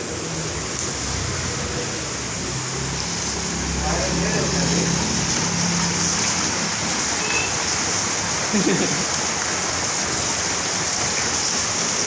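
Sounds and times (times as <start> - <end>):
heavy rain pouring: 0.0 - 12.0
person's voice: 3.7 - 5.2.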